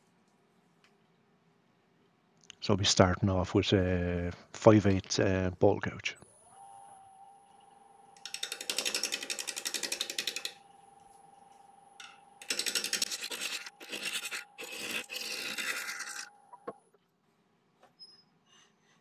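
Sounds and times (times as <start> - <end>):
wood lathe humming: 6.4 - 16.8.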